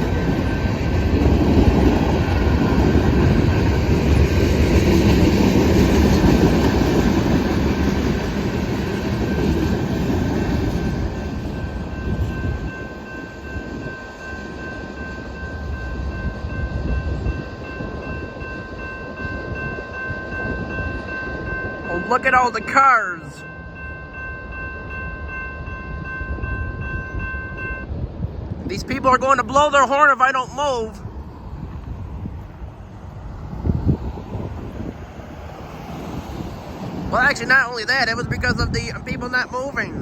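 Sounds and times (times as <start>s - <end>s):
high ringing tones: 0.0s - 4.2s, 10.8s - 28.1s
freight train cars rumbling: 0.0s - 40.0s.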